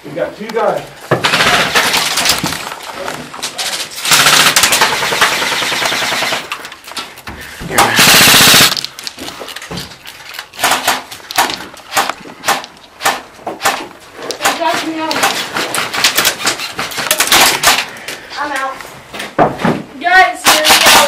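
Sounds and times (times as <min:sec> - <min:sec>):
airsoft guns firing: 0:01.2 - 0:02.3, 0:04.0 - 0:06.6, 0:07.8 - 0:08.9, 0:10.6 - 0:17.9, 0:20.4 - 0:21.0.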